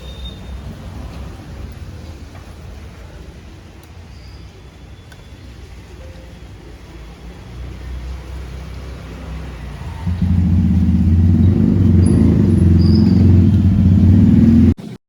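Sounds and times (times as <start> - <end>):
motorcycle engine rumbling: 9.6 - 14.8.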